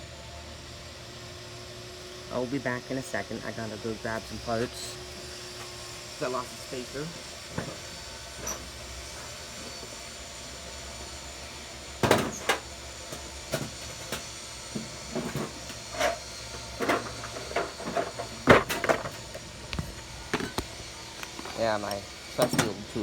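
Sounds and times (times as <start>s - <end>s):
objects knocking and clunking: 12.0s - 21.6s.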